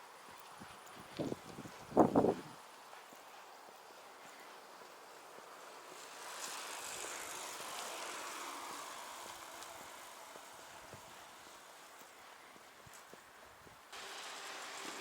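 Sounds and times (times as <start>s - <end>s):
vehicle passing by: 5.6s - 11.8s.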